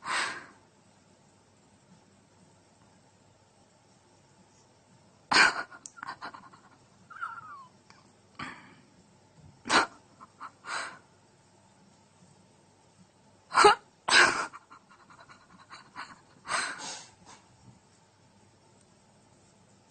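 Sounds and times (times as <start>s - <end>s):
pet sneezing hisses: 16.6s - 17.4s.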